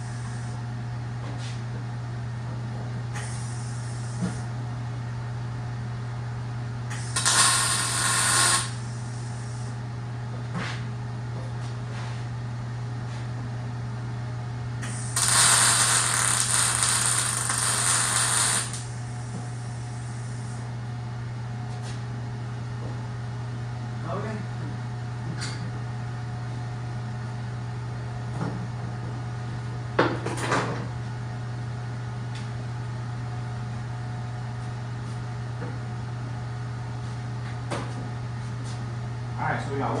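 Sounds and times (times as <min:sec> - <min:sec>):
steady low hum: 0:00.0 - 0:40.0
crackling welding arc: 0:06.9 - 0:08.9, 0:14.8 - 0:19.0.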